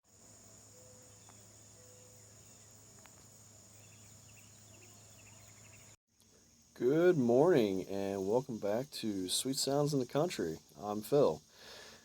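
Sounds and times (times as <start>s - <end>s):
insects chirping: 0.1s - 12.0s.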